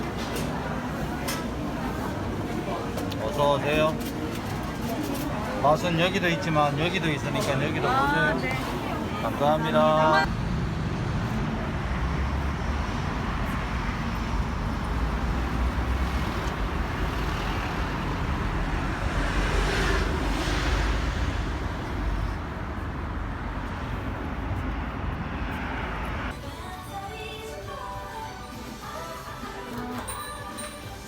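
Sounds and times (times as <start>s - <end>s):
music: 26.3s - 31.0s.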